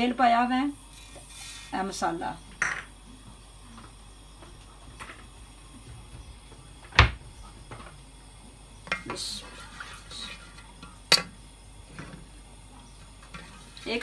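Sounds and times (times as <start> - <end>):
pots and utensils knocking: 11.1 - 11.4.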